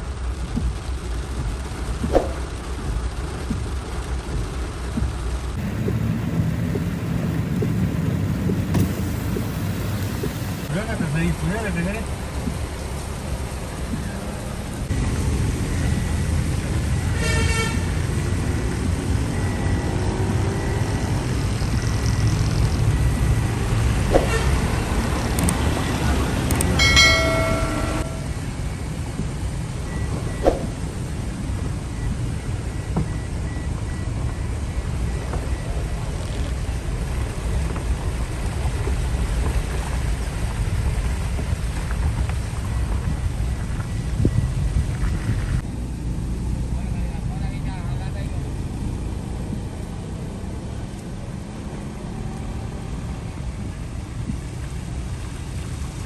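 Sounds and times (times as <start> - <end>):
low rumble: 0.0 - 17.2
heavy rain hiss: 0.0 - 48.5
vehicle rumble: 0.0 - 56.0
car horn toot: 17.2 - 18.0, 26.6 - 28.4.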